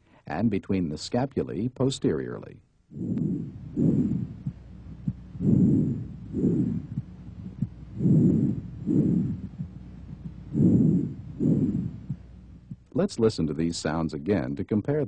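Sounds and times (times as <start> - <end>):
breath sounds through a stethoscope: 2.9 - 12.8
short faint thumps: 3.0 - 12.8.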